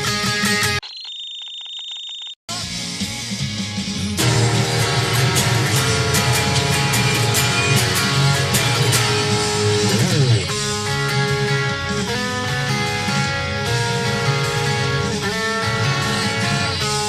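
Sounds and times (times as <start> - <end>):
guitar strumming chords: 4.2 - 17.0.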